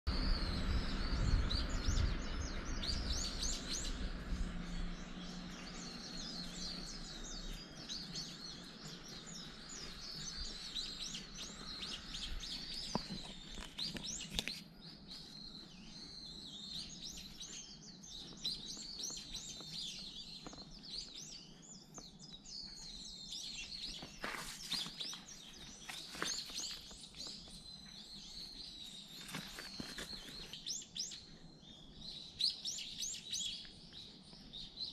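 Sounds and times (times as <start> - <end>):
small birds chirping: 0.0 - 34.9
low rumble: 0.1 - 12.9.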